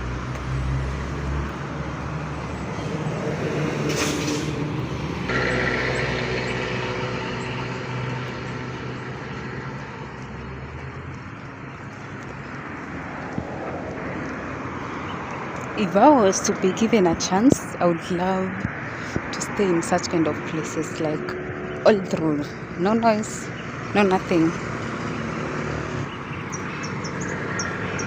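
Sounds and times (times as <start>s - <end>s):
road traffic passing: 0.0s - 28.0s.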